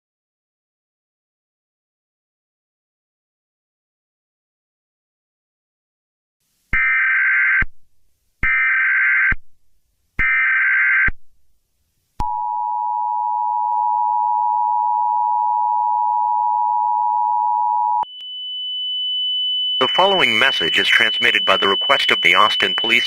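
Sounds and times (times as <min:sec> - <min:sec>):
screeching digital data bursts: 0:19.8 - 0:23.0
two-tone attention signal: 0:19.8 - 0:23.0.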